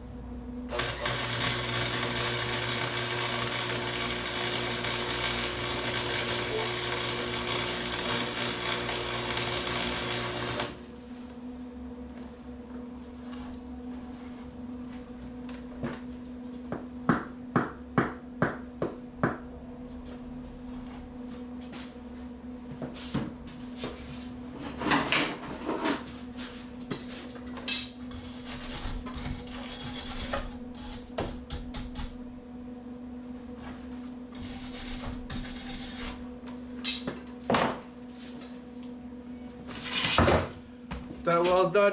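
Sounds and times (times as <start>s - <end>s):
steady hum: 0.0s - 41.9s.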